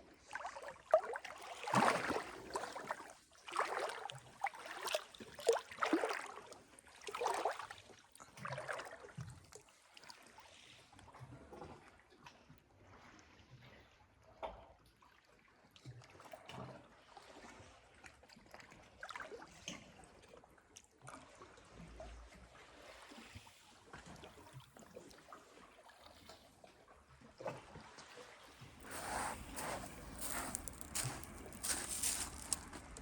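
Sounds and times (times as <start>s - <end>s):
sea water lapping at shore: 0.3s - 7.8s, 27.4s - 33.0s
small wave washing: 1.3s - 4.9s, 28.2s - 33.0s.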